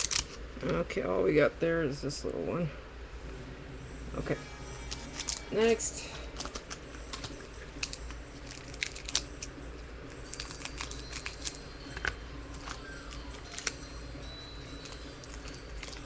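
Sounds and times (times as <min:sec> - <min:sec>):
cards rustling and clicking: 0:00.0 - 0:00.4, 0:04.9 - 0:05.6, 0:06.2 - 0:09.6, 0:10.2 - 0:13.9
wrapper crinkling: 0:00.0 - 0:00.4, 0:06.2 - 0:14.0, 0:14.6 - 0:16.0.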